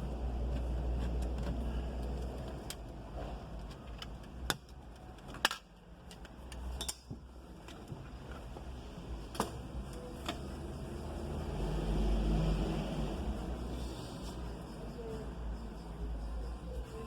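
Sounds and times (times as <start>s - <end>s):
steady low hum: 5.8s - 17.0s.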